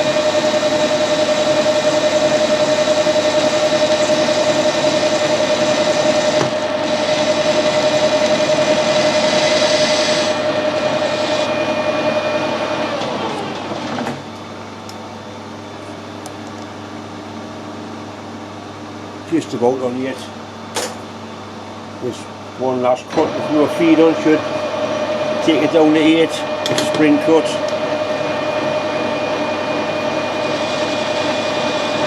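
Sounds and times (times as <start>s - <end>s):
metal lathe whine: 0.0s - 15.9s, 21.4s - 32.0s.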